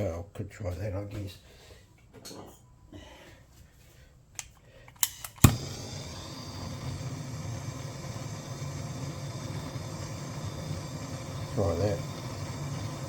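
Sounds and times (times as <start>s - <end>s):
blowtorch lighting pop: 5.0s - 13.0s
blowtorch flame hissing: 5.4s - 13.0s.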